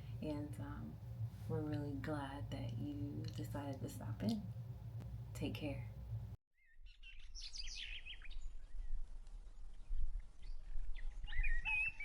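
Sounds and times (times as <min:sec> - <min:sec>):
steady low rumble: 0:00.0 - 0:06.4.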